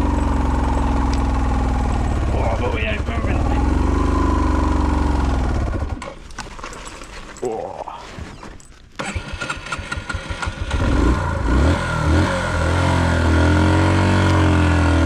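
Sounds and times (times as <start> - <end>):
dirt bike engine revving: 0.0 - 6.1, 9.0 - 15.0
dirt bike engine cranking: 0.0 - 7.5, 8.1 - 14.6.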